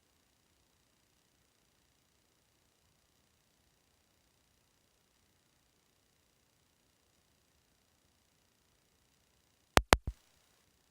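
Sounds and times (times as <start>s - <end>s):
sharp clicks: 9.8s - 10.1s.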